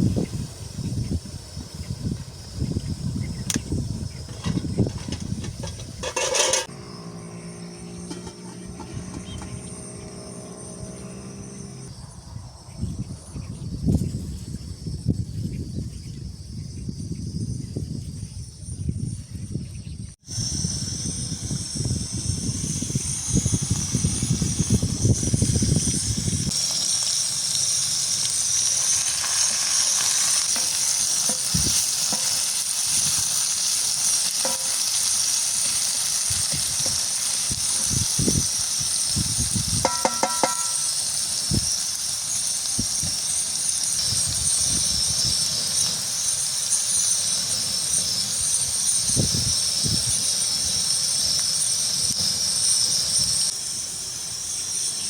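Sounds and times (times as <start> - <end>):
food sizzling in a pan: 0.0 - 11.6, 20.2 - 55.0
low rumbling: 3.8 - 13.8
short metallic clink: 39.8 - 41.0.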